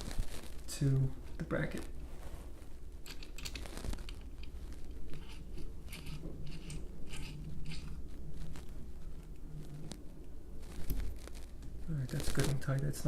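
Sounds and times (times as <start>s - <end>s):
allen wrench metal scrapes and clicks: 3.0s - 4.5s, 5.1s - 8.0s.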